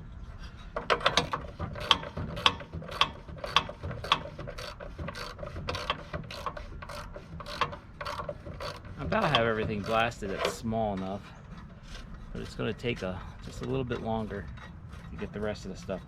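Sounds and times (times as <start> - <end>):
ratchet wrench clicking: 1.0 - 10.0.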